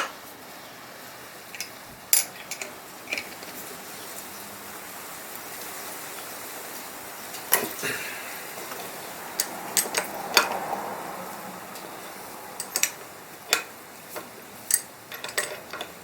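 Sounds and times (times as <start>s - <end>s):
steady background hiss: 0.0s - 16.0s
metallic clicks of hand tools: 8.7s - 10.6s, 12.6s - 16.0s.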